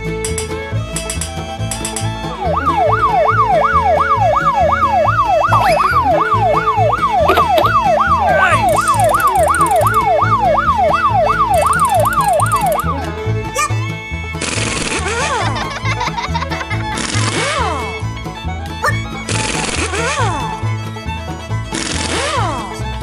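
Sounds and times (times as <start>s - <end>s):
emergency vehicle siren: 2.4s - 13.0s
music with steady beat: 5.2s - 13.2s.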